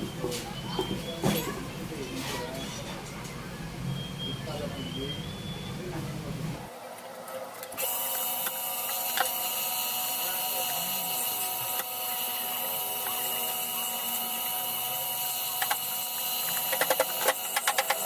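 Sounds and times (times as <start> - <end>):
small electric motor whining: 7.6 - 18.0.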